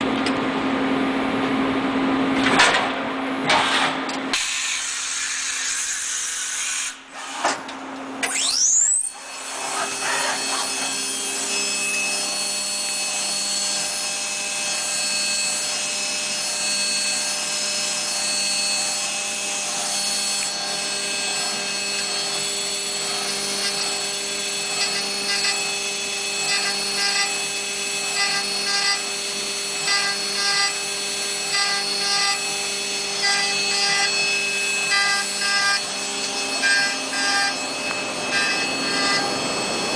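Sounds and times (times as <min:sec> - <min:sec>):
milling machine cutting steel: 0:03.5 - 0:39.9
spindle whining up to speed: 0:08.2 - 0:39.9.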